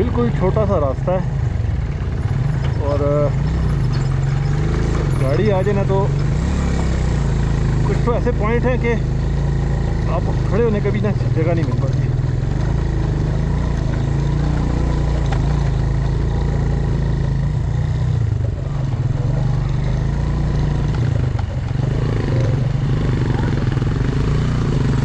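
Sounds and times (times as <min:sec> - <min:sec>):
motorcycle engine running: 0:00.0 - 0:25.0
road and wind noise: 0:00.0 - 0:25.0.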